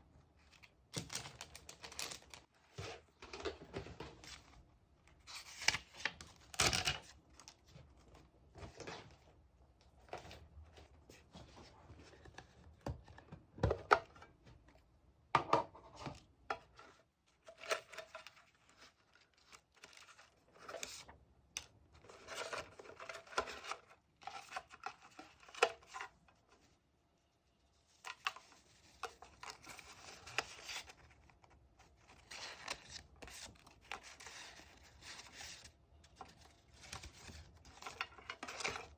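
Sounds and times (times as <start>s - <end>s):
paper rustling: 0.5s - 3.4s.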